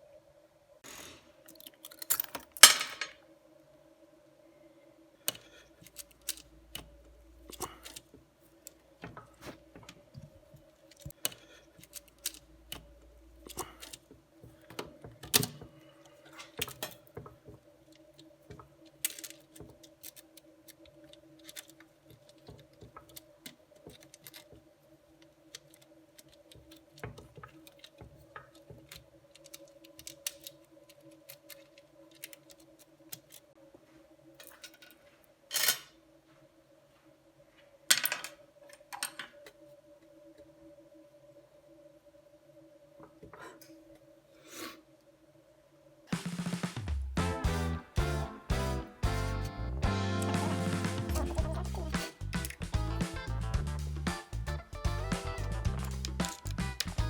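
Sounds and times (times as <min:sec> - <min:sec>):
faint steady hum: 0:00.0 - 0:57.0
metal parts clicking and clinking: 0:01.4 - 0:03.2, 0:05.3 - 0:08.8, 0:10.9 - 0:15.6, 0:17.9 - 0:24.6, 0:25.5 - 0:33.5, 0:34.4 - 0:36.0, 0:55.4 - 0:57.0.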